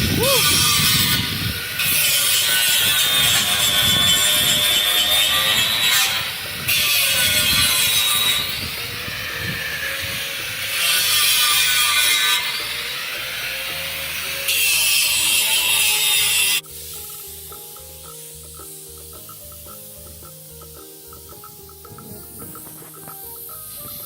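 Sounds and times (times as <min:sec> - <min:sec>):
power tool cutting steel plate: 0:00.2 - 0:20.3.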